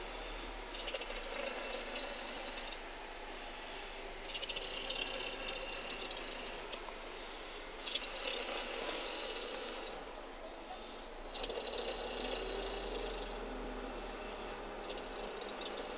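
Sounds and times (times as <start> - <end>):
person snoring: 0.8 - 2.9, 4.4 - 6.7, 7.9 - 10.2, 11.4 - 15.9.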